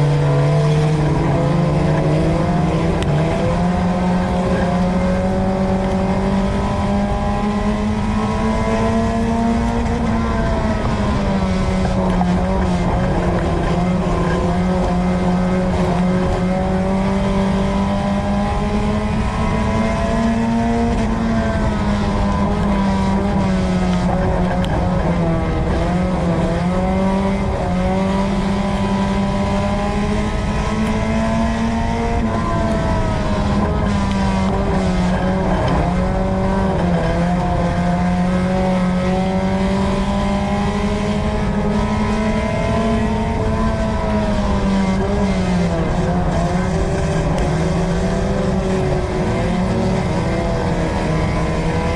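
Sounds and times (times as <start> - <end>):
race car engine at high revs: 0.0 - 51.9.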